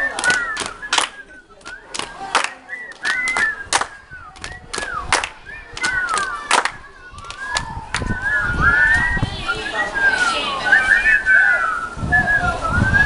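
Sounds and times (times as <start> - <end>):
hand claps and slaps: 0.1 - 8.1.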